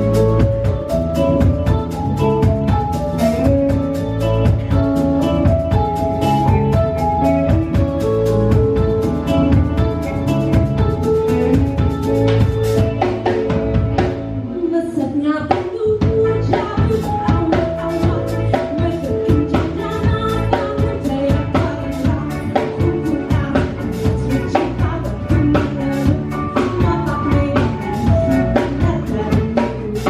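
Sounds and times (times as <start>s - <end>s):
band with fast drum beat: 0.0s - 30.0s
woman singing: 14.4s - 30.0s.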